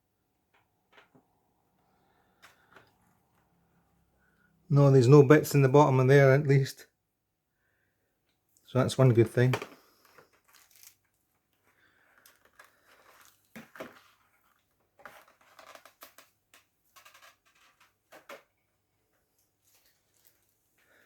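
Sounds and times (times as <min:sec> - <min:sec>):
packaging being handled: 0:09.3 - 0:18.4.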